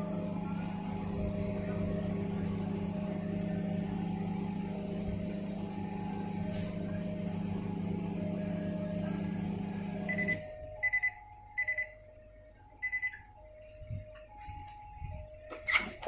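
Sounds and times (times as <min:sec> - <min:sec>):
microwave oven humming: 0:00.0 - 0:16.0
microwave short high-pitched beeps: 0:10.0 - 0:12.0, 0:12.8 - 0:13.2.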